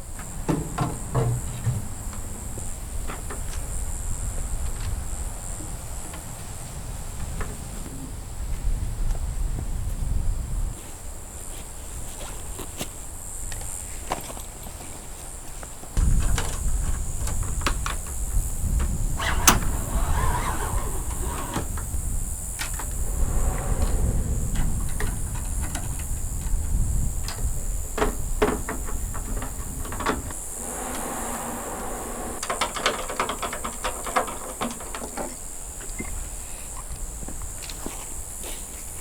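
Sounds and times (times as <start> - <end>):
wind buffeting microphone: 16.0 - 34.0.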